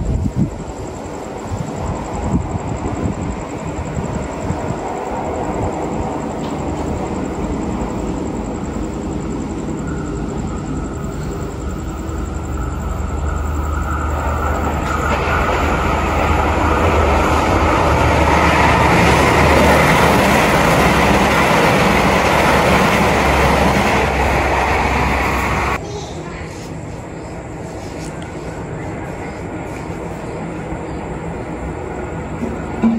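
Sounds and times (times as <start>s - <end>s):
wheels on rails: 0.0s - 26.0s
train rumbling on track: 0.0s - 32.9s.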